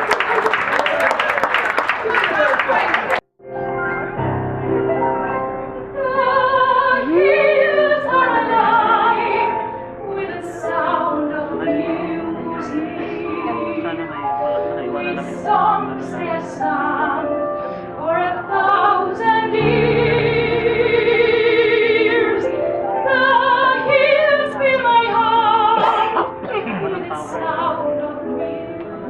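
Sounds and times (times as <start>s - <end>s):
musical accompaniment: 3.4s - 29.0s
operatic singing: 6.0s - 29.0s.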